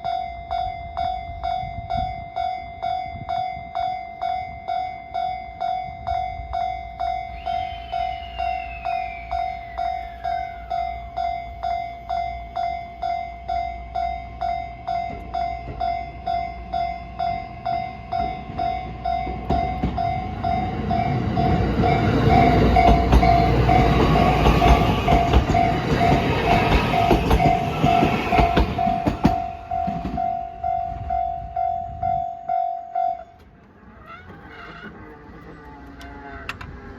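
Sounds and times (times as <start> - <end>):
level-crossing warning bell: 0.0 - 33.6
train wheels clattering over rails: 18.2 - 30.4.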